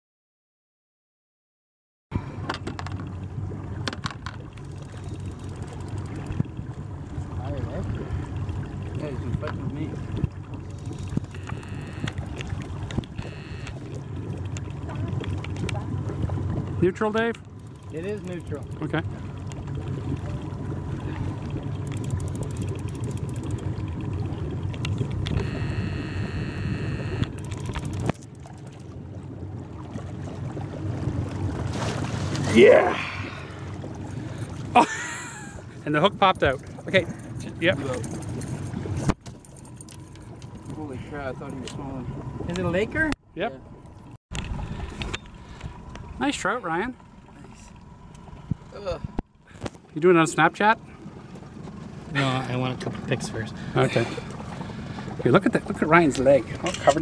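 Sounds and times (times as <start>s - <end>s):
boat motor rumbling: 2.1s - 57.0s
water and hull noise: 2.1s - 57.0s
wind: 2.1s - 57.0s
high whine: 13.0s - 13.9s, 25.2s - 28.2s.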